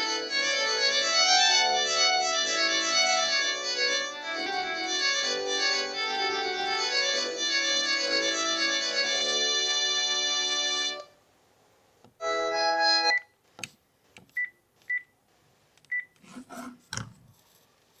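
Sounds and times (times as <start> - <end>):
electronic melody ringtone: 0.0 - 11.0, 12.2 - 13.2.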